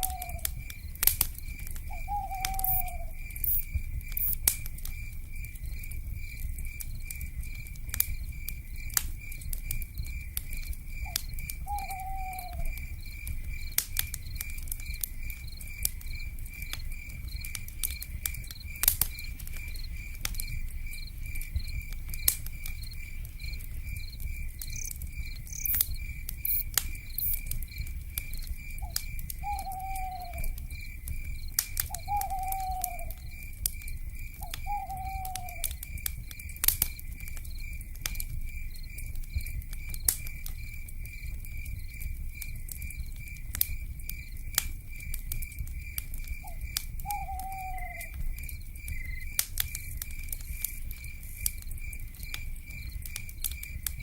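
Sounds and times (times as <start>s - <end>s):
owl call: 0.0s - 0.5s, 1.9s - 3.2s, 11.0s - 12.8s, 28.8s - 30.6s, 32.0s - 33.2s, 34.5s - 35.7s, 46.5s - 48.1s
wood fire crackling and popping: 0.0s - 54.0s
pulsing insect trill: 1.9s - 4.4s, 22.8s - 27.8s.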